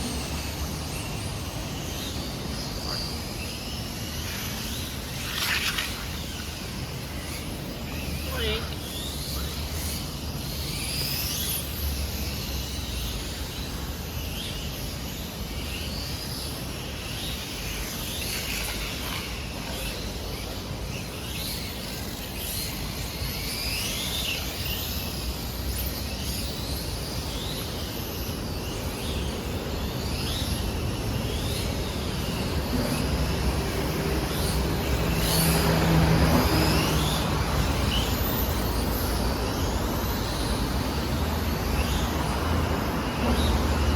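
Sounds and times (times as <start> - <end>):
city traffic rumble: 0.0 - 43.9
heavy road vehicle passing: 32.8 - 39.4.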